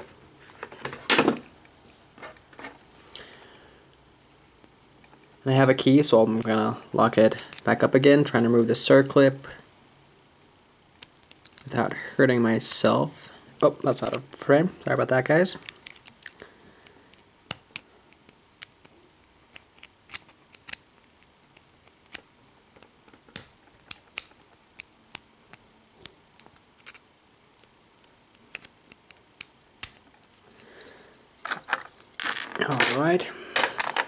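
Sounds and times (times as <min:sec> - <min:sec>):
small metallic clicks and scrapes: 0:17.1 - 0:22.2, 0:26.0 - 0:27.0.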